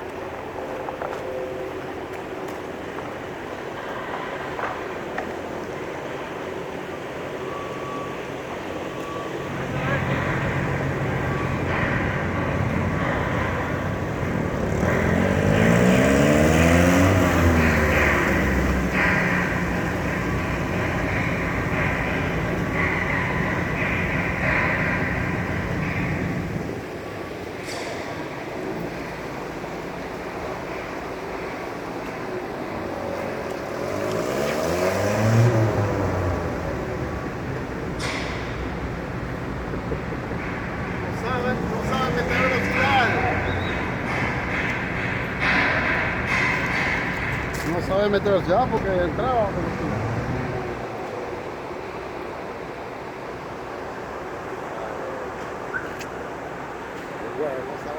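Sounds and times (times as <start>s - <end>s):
van engine revving: 9.5s - 26.8s, 28.6s - 51.8s.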